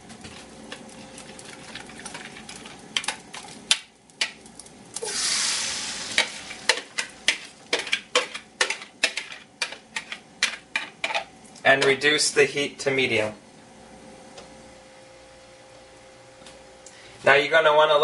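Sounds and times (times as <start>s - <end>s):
batter sizzling in a pan: 0.2s - 10.8s.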